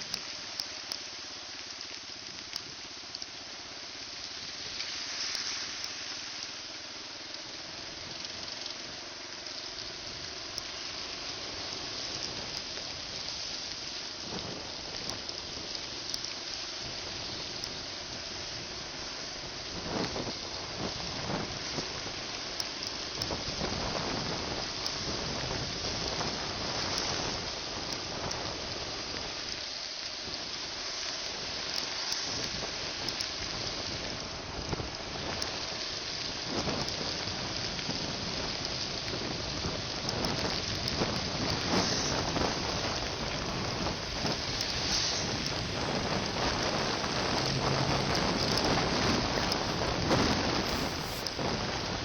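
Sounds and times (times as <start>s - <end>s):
raindrops striking microphone: 41.4s - 52.0s
heavy rain falling: 41.7s - 52.0s.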